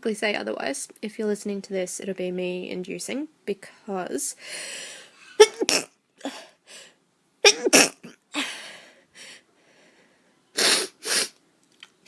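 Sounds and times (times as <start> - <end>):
woman breathing: 4.4 - 5.4, 6.2 - 7.0, 8.3 - 11.2
woman sneezing: 7.4 - 8.5, 10.6 - 11.4.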